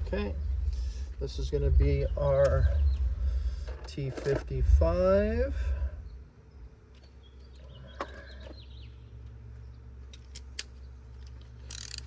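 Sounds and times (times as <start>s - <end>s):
low steady hum: 0.0s - 12.0s
hand tools clicking: 11.6s - 12.0s.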